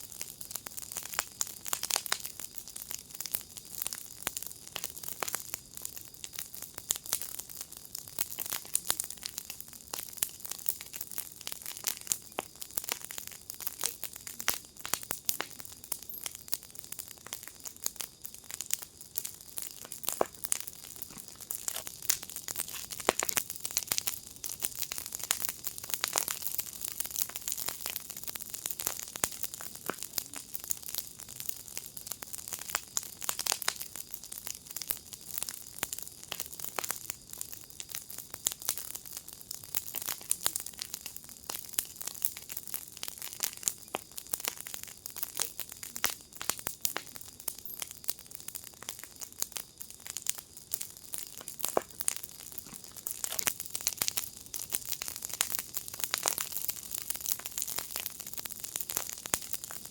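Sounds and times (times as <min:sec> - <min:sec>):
fire hiss: 0:00.0 - 0:59.9
wood fire crackling and popping: 0:00.0 - 0:59.9.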